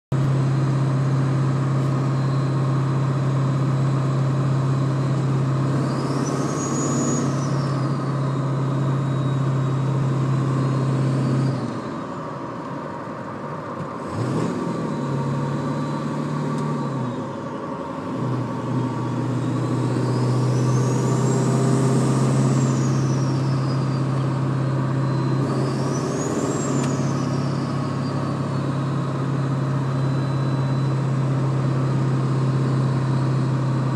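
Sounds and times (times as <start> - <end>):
high whistle: 5.0 - 10.0, 19.4 - 24.3, 24.9 - 29.2, 29.8 - 31.1.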